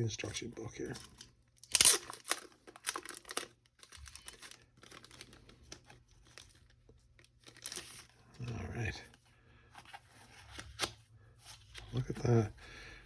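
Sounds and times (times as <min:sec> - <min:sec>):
paper and packaging crinkling: 0:00.8 - 0:08.2.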